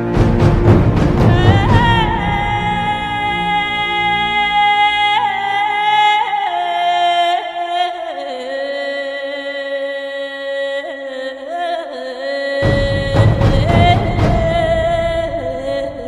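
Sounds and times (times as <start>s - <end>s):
loud harsh noise: 0.0s - 5.4s
eerie wailing voice: 1.2s - 9.0s.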